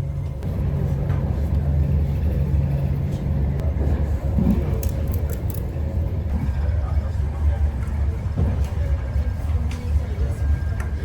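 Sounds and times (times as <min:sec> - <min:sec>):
vehicle rumble: 0:00.0 - 0:08.6.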